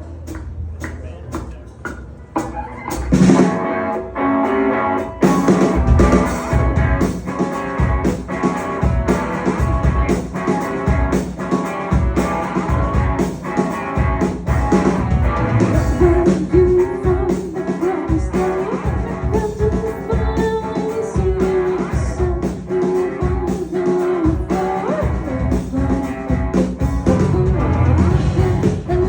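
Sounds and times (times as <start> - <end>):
steady drum beat: 0.0 - 3.7, 5.0 - 29.0
bending guitar notes: 2.0 - 29.0
rock band playing live: 2.4 - 29.0.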